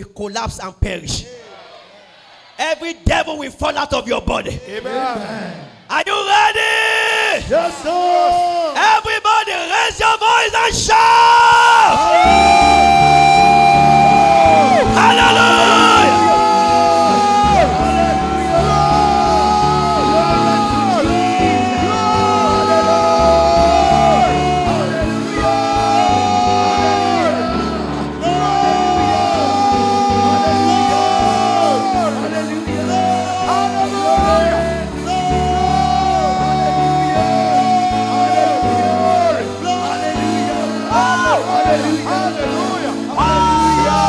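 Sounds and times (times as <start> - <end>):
congregation shouting and singing: 1.2 - 44.0
band playing upbeat music: 12.1 - 44.0.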